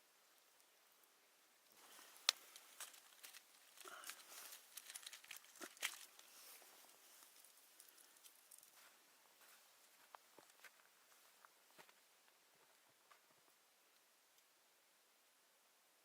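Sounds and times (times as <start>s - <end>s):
crinkling and rustling: 1.7s - 12.0s.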